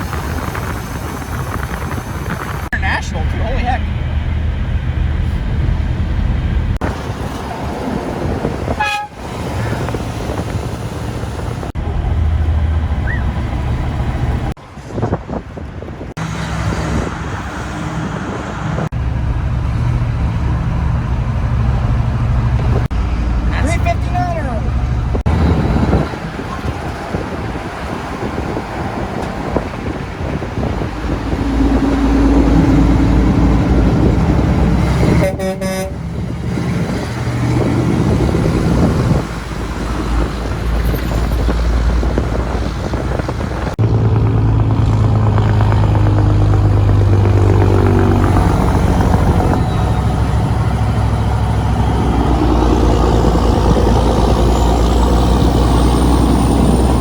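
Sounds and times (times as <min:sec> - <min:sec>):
truck engines running: 0:00.0 - 0:57.0
horn blast: 0:08.7 - 0:09.3, 0:31.1 - 0:36.3.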